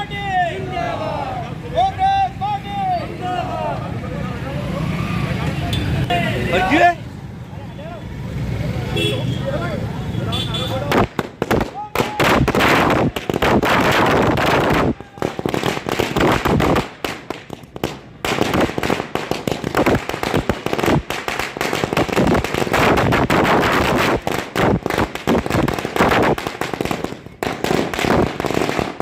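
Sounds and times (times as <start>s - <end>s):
firecrackers crackling: 10.8s - 29.0s.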